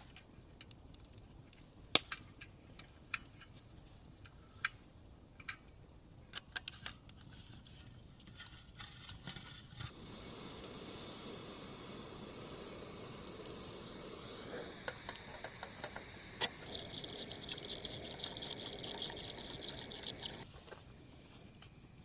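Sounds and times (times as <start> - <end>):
steady hiss: 9.5 - 22.0.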